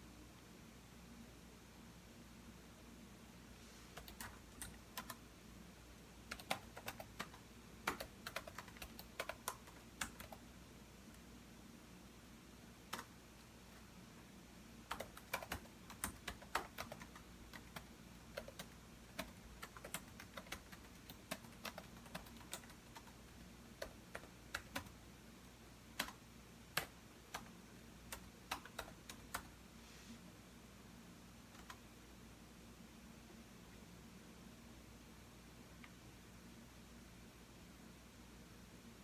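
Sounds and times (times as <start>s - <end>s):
keyboard typing: 4.0s - 5.2s, 6.3s - 10.4s, 12.9s - 13.2s, 14.9s - 25.0s, 25.9s - 29.5s, 31.5s - 31.8s.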